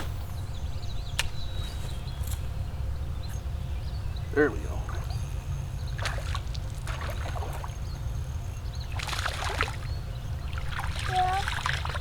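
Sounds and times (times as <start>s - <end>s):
water trickling and splashing: 4.8s - 12.0s.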